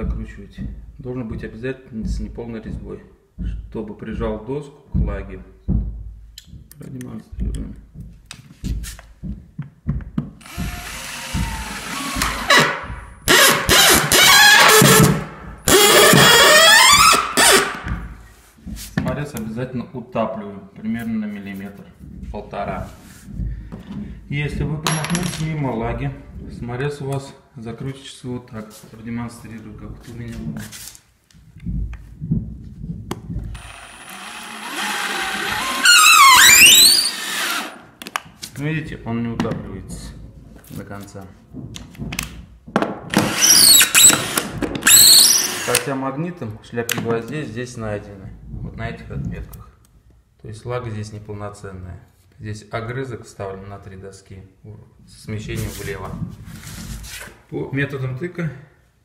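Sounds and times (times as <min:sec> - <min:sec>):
knocks on wood: 0:04.9 - 0:06.7, 0:07.4 - 0:13.8, 0:41.5 - 0:43.4
power drill driving screw: 0:10.4 - 0:17.8, 0:33.5 - 0:37.8, 0:43.1 - 0:45.9
electric screwdriver motor whine: 0:33.6 - 0:37.7, 0:43.3 - 0:45.8.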